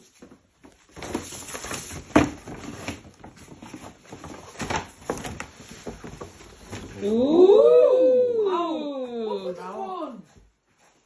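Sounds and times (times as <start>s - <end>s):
gift packaging rustling: 0.0s - 7.3s.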